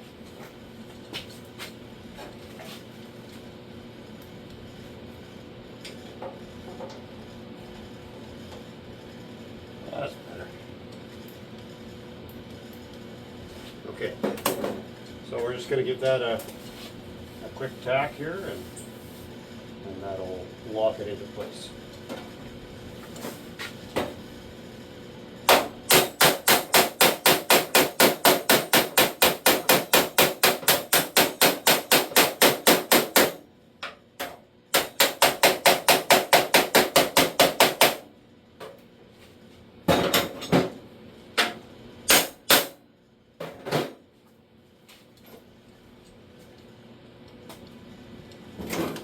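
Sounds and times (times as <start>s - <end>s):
hammer striking steel panel: 25.5s - 33.4s.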